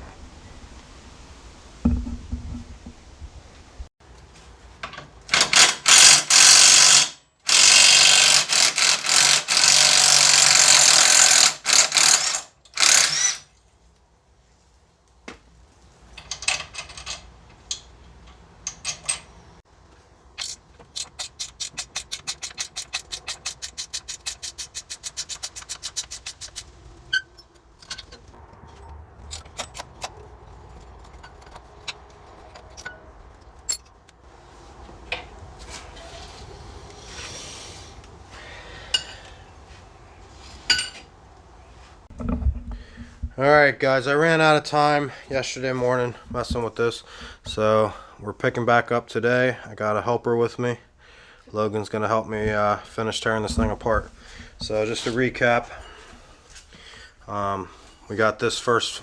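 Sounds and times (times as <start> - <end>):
power tool bursts: 5.3 - 13.5, 20.4 - 26.7
ratchet wrench clicking: 5.3 - 13.5, 20.4 - 26.7, 29.3 - 30.2.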